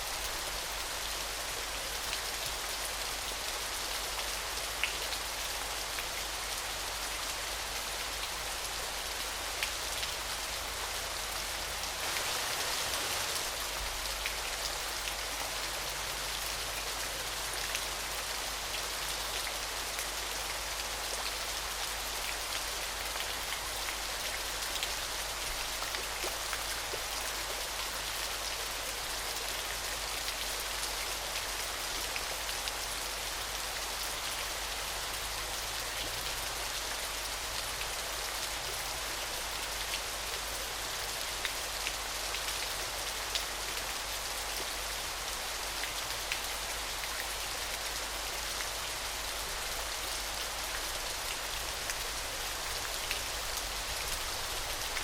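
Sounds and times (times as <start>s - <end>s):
falling water spattering: 12.0s - 13.6s.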